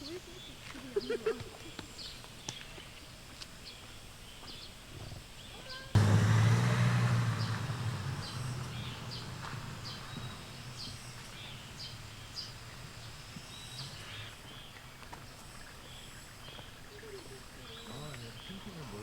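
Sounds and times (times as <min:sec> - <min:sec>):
birds chirping: 0:05.4 - 0:18.8.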